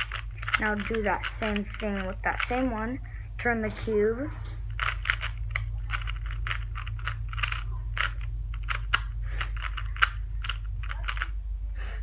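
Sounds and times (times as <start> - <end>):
puzzle cube clicking: 0.0 - 2.6, 4.7 - 11.3
steady low hum: 0.0 - 12.0.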